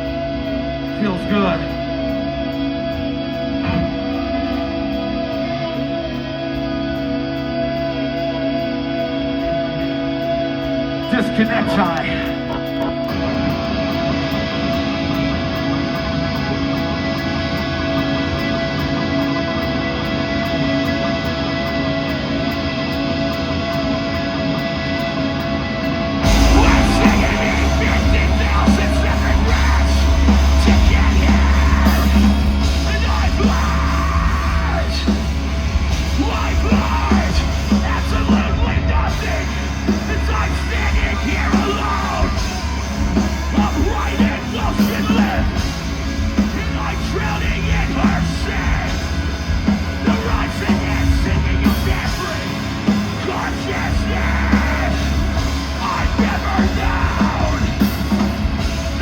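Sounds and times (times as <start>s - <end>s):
distorted band with heavy bass: 0.0s - 59.0s
screamed vocals: 26.2s - 35.4s, 36.0s - 45.8s, 50.0s - 59.0s.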